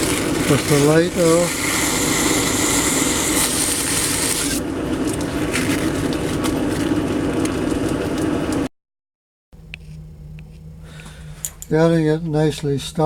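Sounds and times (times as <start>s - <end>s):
metal lathe running: 0.0s - 4.6s.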